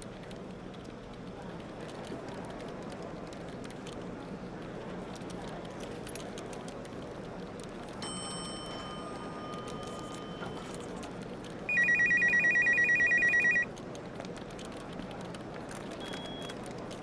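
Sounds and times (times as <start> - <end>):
electronic telephone ringing: 11.7 - 13.7
faint steady tone: 11.7 - 13.7.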